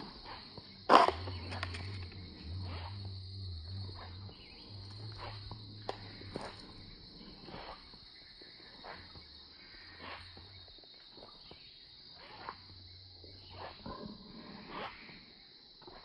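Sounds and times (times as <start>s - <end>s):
low hum: 0.0s - 10.6s
insects droning: 0.0s - 16.0s.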